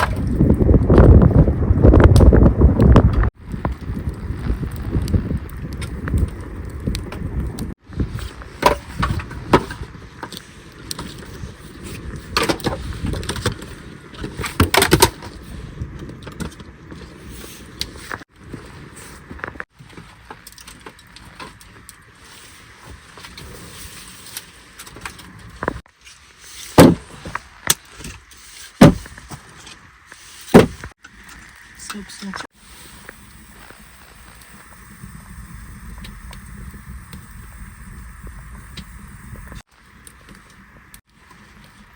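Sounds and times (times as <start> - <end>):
knocks and thumps: 28.8 - 29.4, 30.5 - 30.9.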